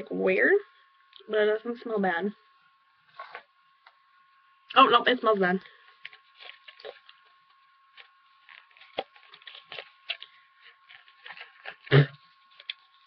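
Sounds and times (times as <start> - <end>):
faint high whine: 0.0 - 13.0
small items clicking and rustling: 6.0 - 7.3, 7.9 - 12.8.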